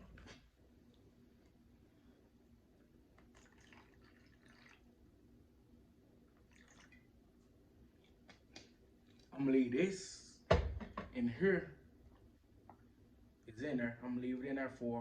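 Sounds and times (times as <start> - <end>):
liquid dripping: 3.2 - 5.0, 6.3 - 7.2.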